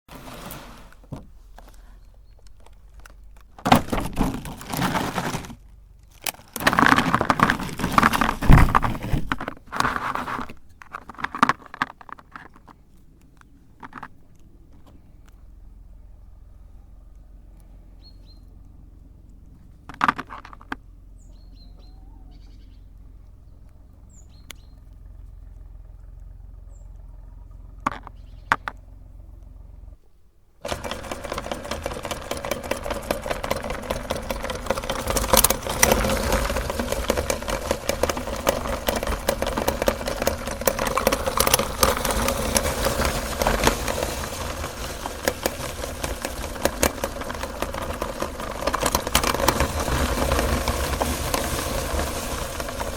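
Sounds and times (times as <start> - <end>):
faint bird chirps: 14.9 - 18.6, 21.1 - 28.7
sharp clicks: 23.6 - 25.6
meat grinder motor grinding: 30.6 - 52.9.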